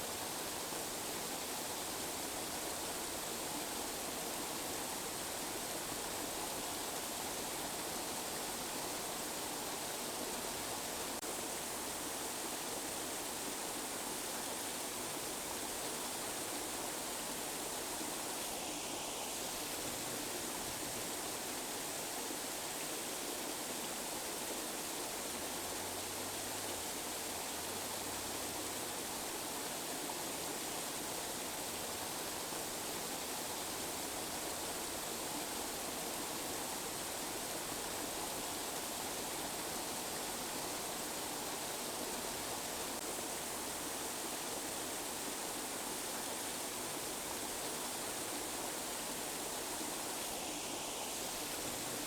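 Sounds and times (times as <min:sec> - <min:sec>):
steady hiss: 0:00.0 - 0:52.0.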